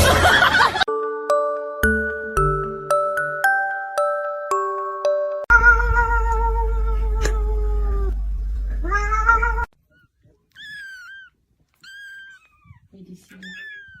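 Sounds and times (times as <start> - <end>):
cat meowing: 5.5 - 8.2, 8.8 - 14.0
high-pitched cat meows: 5.5 - 8.2, 8.8 - 14.0.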